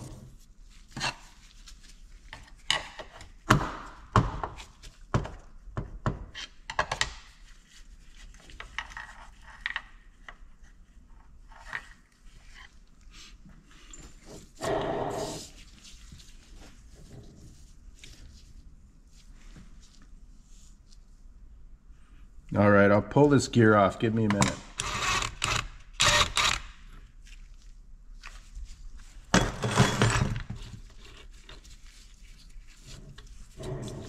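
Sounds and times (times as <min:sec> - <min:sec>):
harsh metal rasp: 0:33.6 - 0:34.0.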